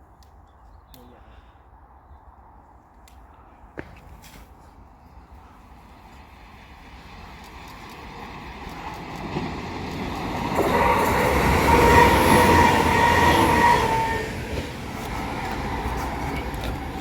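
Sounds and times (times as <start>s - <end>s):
train passing at high speed: 4.9s - 17.0s
train high whine: 5.1s - 17.0s.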